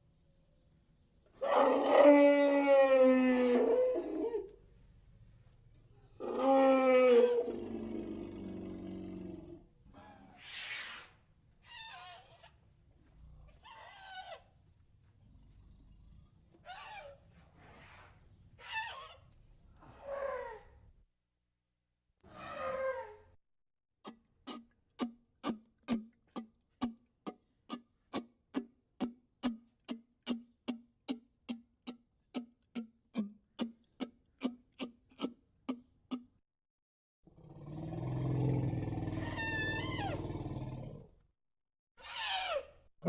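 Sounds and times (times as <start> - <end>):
elephant call: 39.1 - 40.3, 42.0 - 42.7.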